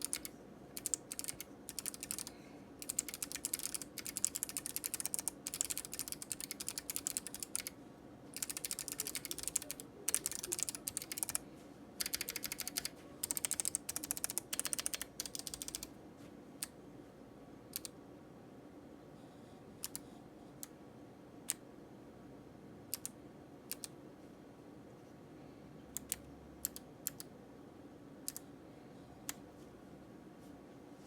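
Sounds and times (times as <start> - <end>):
mechanical keyboard typing: 0.0 - 11.4, 12.0 - 15.9, 19.8 - 20.0, 23.7 - 23.9, 26.0 - 27.3, 28.2 - 28.4.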